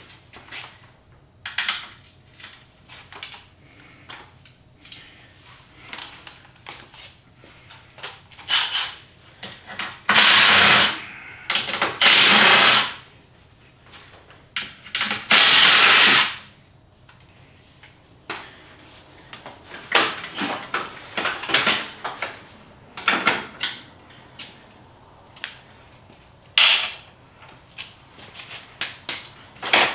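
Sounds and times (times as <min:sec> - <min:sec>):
clicks and knocks of parts: 0:26.6 - 0:29.9.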